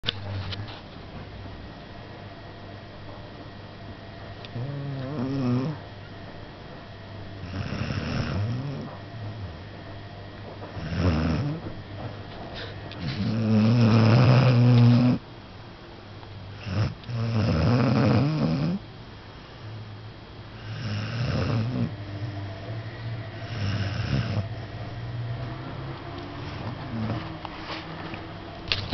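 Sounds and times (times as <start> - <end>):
pet snoring: 4.5 - 5.8, 7.4 - 9.6, 10.7 - 11.8, 12.6 - 15.2, 16.6 - 18.8, 20.6 - 22.7, 23.4 - 24.8, 26.2 - 27.9.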